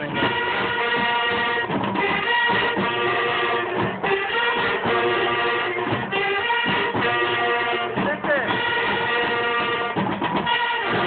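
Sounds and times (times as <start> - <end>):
instrumental music with held notes: 0.0 - 11.0.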